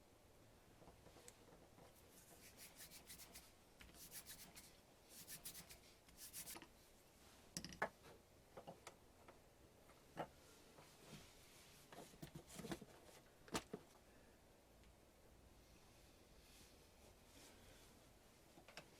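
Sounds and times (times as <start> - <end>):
faint rubbing and scraping: 1.0 - 6.6.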